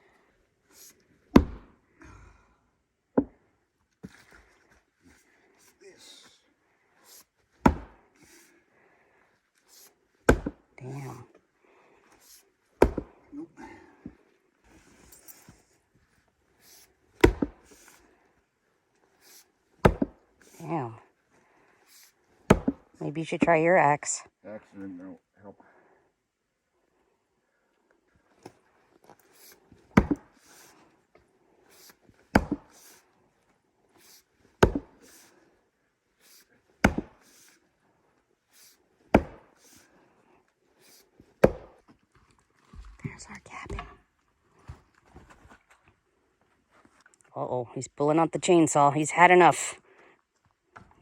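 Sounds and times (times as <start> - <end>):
maul striking a log: 1.3 - 1.8, 7.6 - 8.0, 10.3 - 10.7, 12.8 - 13.2, 17.2 - 17.8, 19.8 - 20.2, 22.5 - 22.9, 29.9 - 30.4, 32.3 - 32.8, 34.6 - 35.1, 36.8 - 37.3, 39.1 - 39.6, 41.4 - 41.8.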